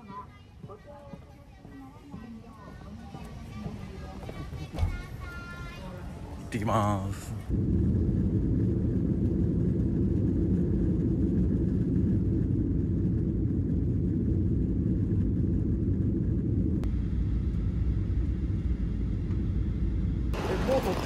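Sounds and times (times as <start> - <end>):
vehicle rumbling in motion: 7.3 - 21.0.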